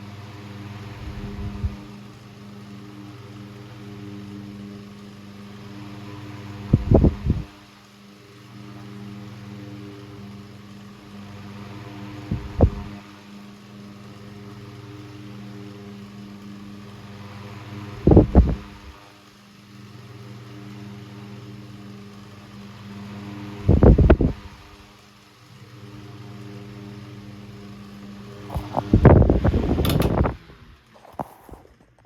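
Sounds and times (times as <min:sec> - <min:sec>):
air rushing from fan blades: 0:00.0 - 0:31.8
fan motor humming: 0:00.0 - 0:32.0.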